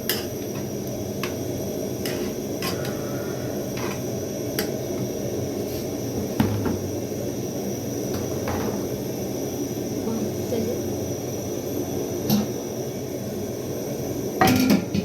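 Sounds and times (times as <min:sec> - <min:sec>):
kitchenware clicks and knocks: 0:08.2 - 0:08.9.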